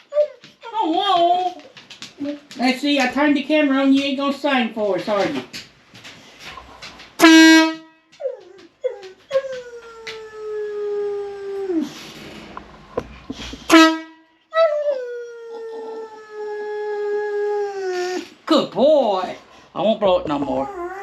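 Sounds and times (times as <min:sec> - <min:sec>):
loud motorcycle horn blasts: 0:13.7 - 0:14.2.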